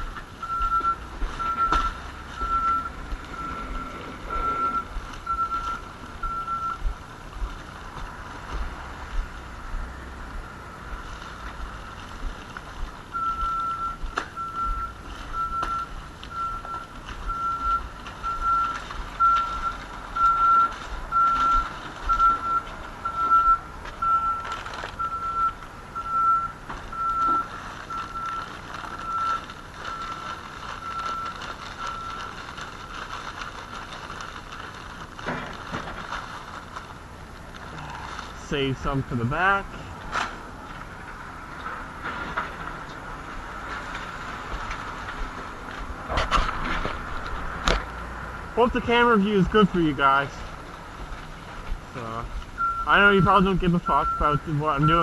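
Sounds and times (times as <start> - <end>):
reversing alarm beeping: 0.4 - 6.9, 13.1 - 32.3, 52.6 - 55.0.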